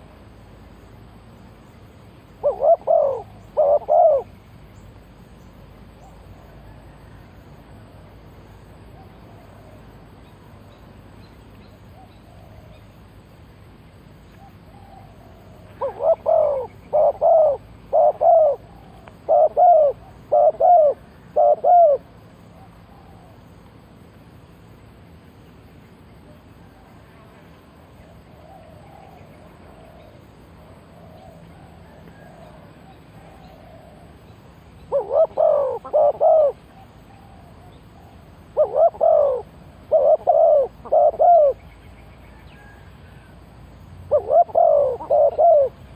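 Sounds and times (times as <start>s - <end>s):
dove cooing: 2.4s - 4.3s, 14.4s - 23.4s, 28.3s - 30.2s, 30.9s - 34.2s, 34.8s - 41.6s, 44.1s - 45.9s.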